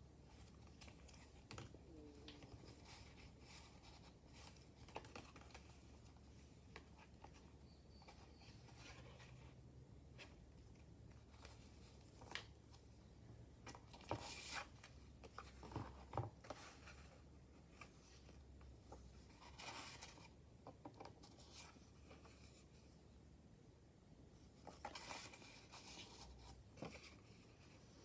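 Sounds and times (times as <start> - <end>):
paper rustling and crinkling: 0.2 - 9.5, 13.6 - 22.8, 24.4 - 28.0.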